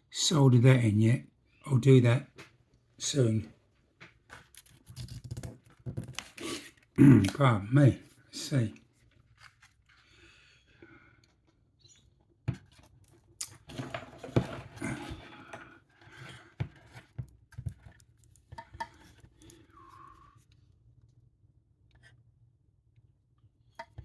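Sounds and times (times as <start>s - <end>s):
small parts clicking and tapping: 4.3s - 6.4s.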